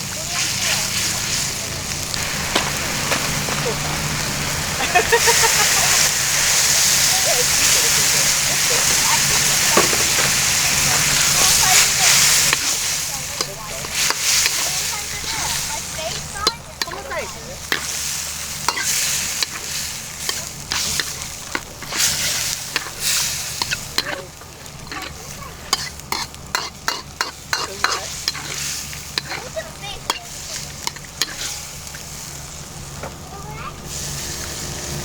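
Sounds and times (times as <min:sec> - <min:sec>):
food sizzling in a pan: 0:00.0 - 0:35.0
utensil scraping and tapping pan: 0:08.8 - 0:18.0, 0:18.6 - 0:32.1.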